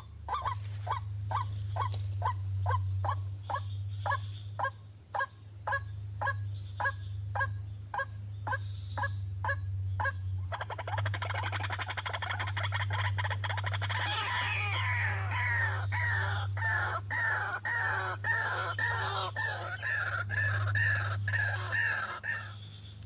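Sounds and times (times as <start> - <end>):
steady low hum: 0.0 - 23.0
waterhen honking calls: 0.0 - 23.0.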